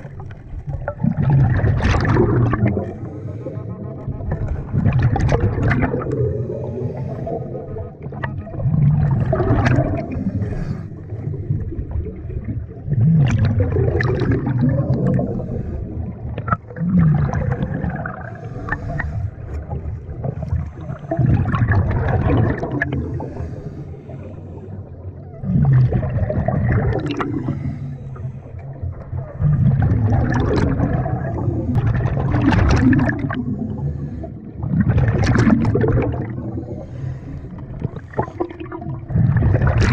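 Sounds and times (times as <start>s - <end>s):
diver exhaling bubbles: 0.0s - 39.9s
diver inhaling underwater: 2.5s - 4.4s, 5.9s - 8.1s, 9.2s - 11.6s, 14.6s - 21.8s, 22.5s - 26.2s, 26.8s - 29.0s, 33.1s - 34.9s, 35.6s - 39.2s.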